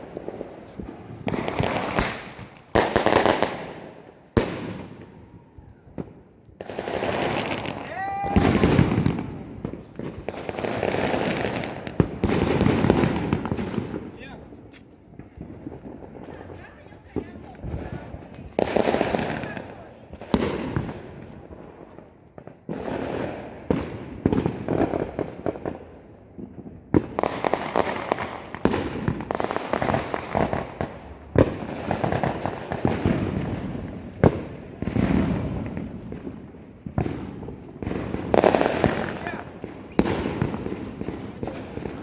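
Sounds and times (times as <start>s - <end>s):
firecrackers crackling: 0.0s - 42.0s
loud sharp firework bangs: 0.0s - 42.0s.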